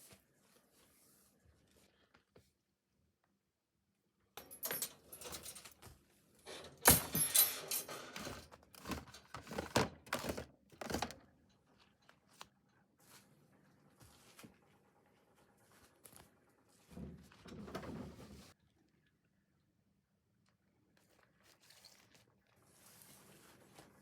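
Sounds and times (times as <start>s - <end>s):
metal cage rattling and clanking: 4.4s - 5.8s, 6.5s - 11.2s.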